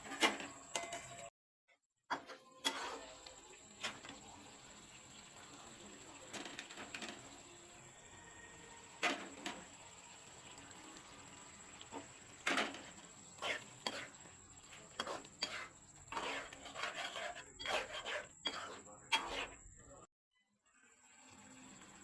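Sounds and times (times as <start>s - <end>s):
cookware and utensils clinking: 0.0s - 1.3s, 2.1s - 19.8s
faint steady hiss: 3.0s - 16.6s.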